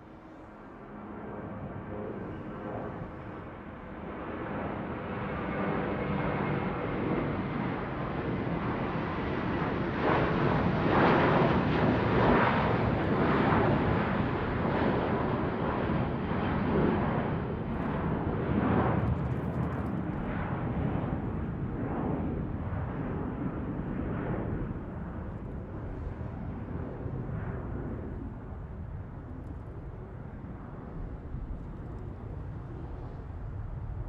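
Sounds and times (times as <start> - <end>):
airplane flying over: 0.0 - 34.0.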